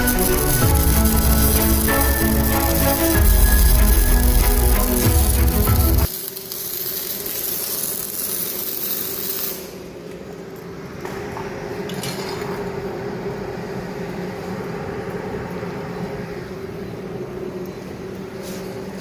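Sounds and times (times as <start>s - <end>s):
steady machine hum: 0.0s - 6.1s
welding arc hissing and crackling: 0.0s - 10.4s.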